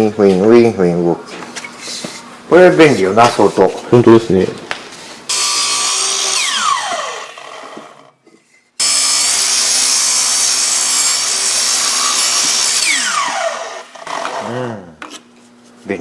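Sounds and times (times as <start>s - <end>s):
miter saw cutting wood: 5.3s - 8.2s, 8.8s - 14.8s.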